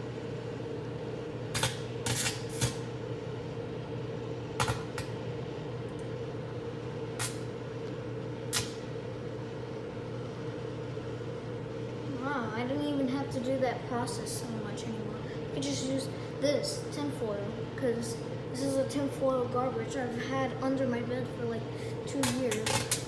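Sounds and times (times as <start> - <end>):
microwave oven humming: 0.0 - 23.0
tinfoil sparking snaps: 1.6 - 2.9, 7.2 - 7.5, 8.5 - 8.8.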